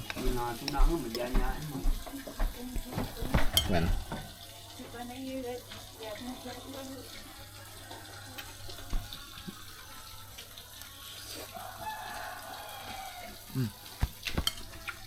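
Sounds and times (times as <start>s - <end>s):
distant rooster crowing: 11.4s - 13.7s.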